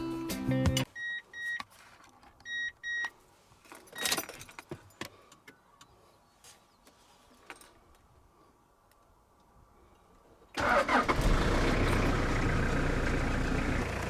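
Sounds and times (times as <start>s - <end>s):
rustle: 1.5s - 5.3s, 6.0s - 10.6s.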